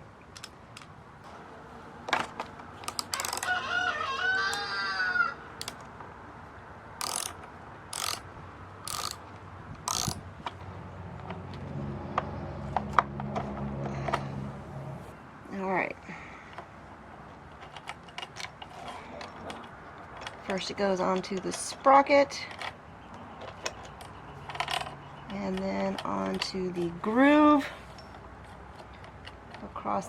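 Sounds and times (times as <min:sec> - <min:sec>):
chainsaw chain ratcheting rasps: 0:02.2 - 0:03.8, 0:07.0 - 0:10.6, 0:24.4 - 0:28.2
rooster crowing: 0:03.1 - 0:05.5.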